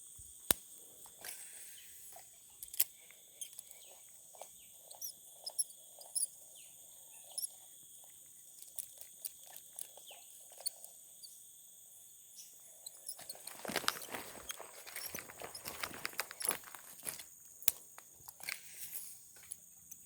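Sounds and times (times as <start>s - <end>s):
small clicks: 2.6s - 6.3s
high-pitched insect chorus: 10.9s - 20.0s
soft rustles: 13.1s - 17.3s.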